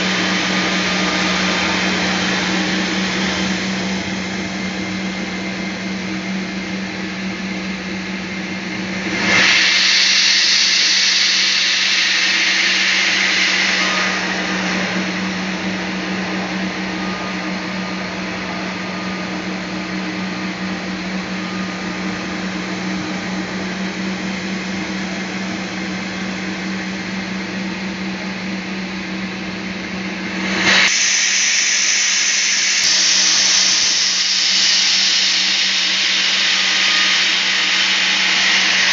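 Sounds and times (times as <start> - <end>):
bandsaw humming: 0.0 - 38.9
saw cutting log: 30.8 - 38.9.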